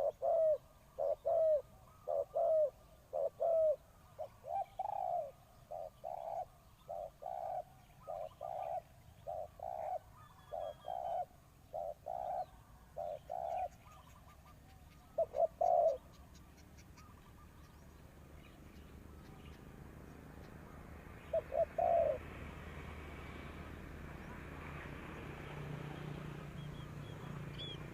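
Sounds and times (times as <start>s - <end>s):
dove cooing: 0.0s - 17.7s, 21.2s - 22.4s.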